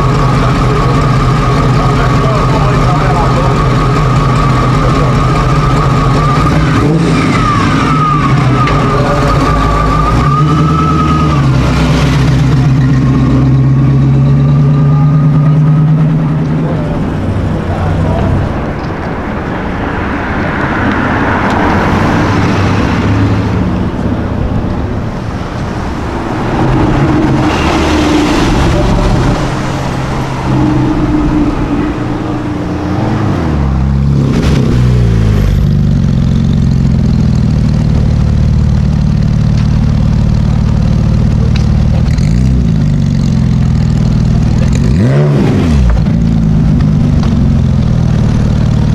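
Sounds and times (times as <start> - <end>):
car engine revving: 0.0 - 48.9
street traffic: 0.0 - 48.9.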